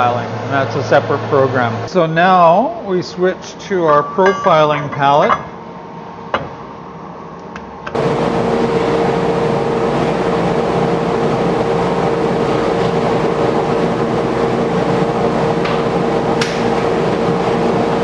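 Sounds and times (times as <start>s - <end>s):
milling machine whining: 7.9s - 18.0s.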